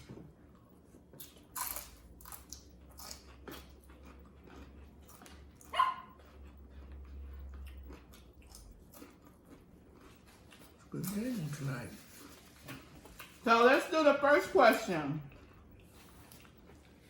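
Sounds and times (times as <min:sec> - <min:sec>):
dog barking: 0:05.6 - 0:06.2.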